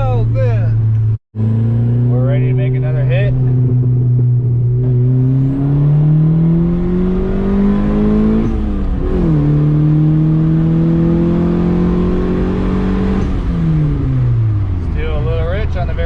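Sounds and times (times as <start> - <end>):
turbocharged car engine revving: 0.0 - 16.0.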